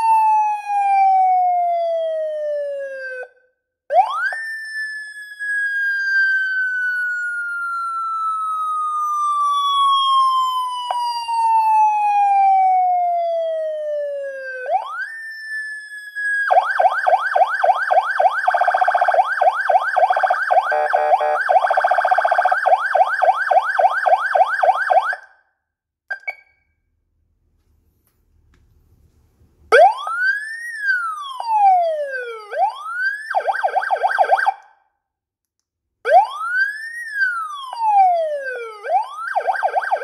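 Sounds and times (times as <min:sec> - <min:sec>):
siren wail: 0:00.0 - 0:25.5, 0:29.7 - 0:34.8, 0:36.1 - 0:40.0
siren fast yelp: 0:03.9 - 0:25.3, 0:29.7 - 0:34.6, 0:36.1 - 0:40.0.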